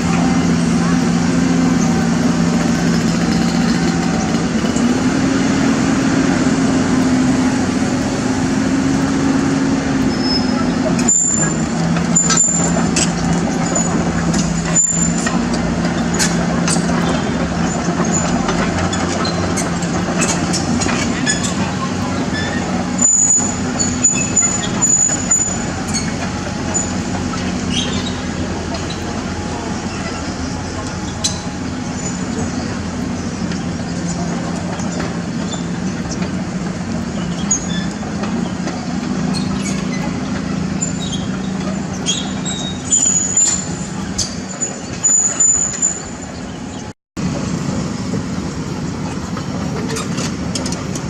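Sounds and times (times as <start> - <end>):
heavy diesel engine running: 0.0 - 51.0
thin high squeal: 40.8 - 46.3.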